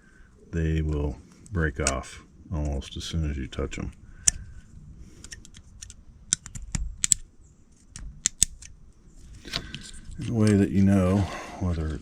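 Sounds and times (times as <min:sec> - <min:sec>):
small sharp plastic clicks: 0:03.9 - 0:04.6, 0:05.2 - 0:08.8.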